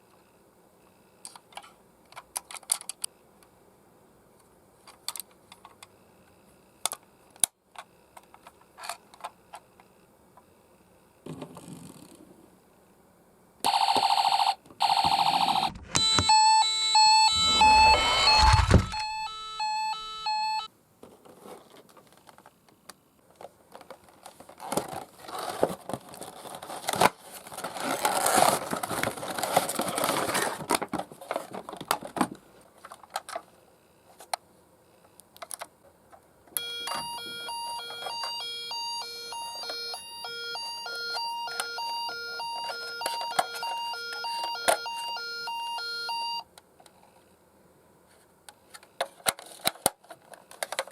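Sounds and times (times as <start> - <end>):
toy siren beeping tones: 13.7 - 20.7, 36.6 - 46.4
rustling and scraping handling noise: 21.0 - 22.6, 23.3 - 33.5.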